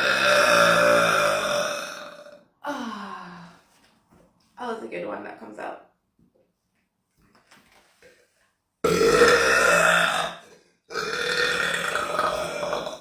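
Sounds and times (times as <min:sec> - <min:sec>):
woman burping: 0:00.0 - 0:03.0, 0:08.8 - 0:13.0.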